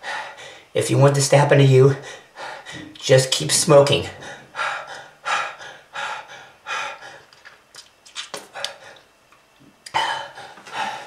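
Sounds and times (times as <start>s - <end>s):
person gasping for air: 9.9s - 11.0s.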